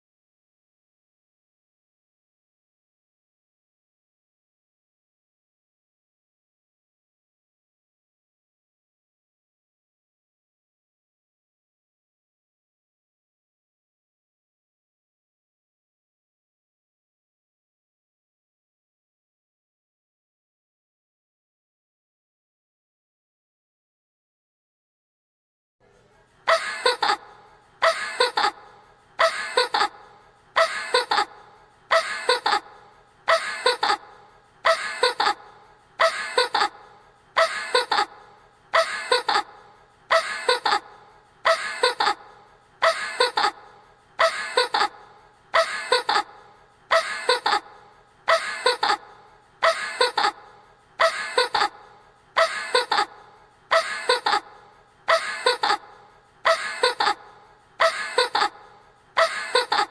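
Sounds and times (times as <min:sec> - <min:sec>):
girl's cartoon laugh: 0:26.5 - 0:27.2, 0:27.8 - 0:28.6, 0:29.2 - 0:29.9, 0:30.6 - 0:31.3, 0:31.9 - 0:32.6, 0:33.3 - 0:34.0, 0:34.6 - 0:35.4, 0:36.0 - 0:36.8, 0:37.4 - 0:38.1, 0:38.7 - 0:39.5, 0:40.1 - 0:42.2, 0:42.8 - 0:43.6, 0:44.2 - 0:45.0, 0:45.6 - 0:46.3, 0:46.9 - 0:50.4, 0:51.0 - 0:51.8, 0:52.4 - 0:57.2, 0:57.8 - 0:58.6, 0:59.2 - 0:59.9.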